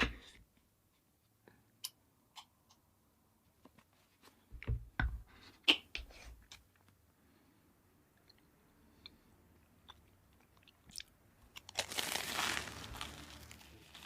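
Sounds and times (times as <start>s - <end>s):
crisp bites and crunches: 10.8s - 14.0s.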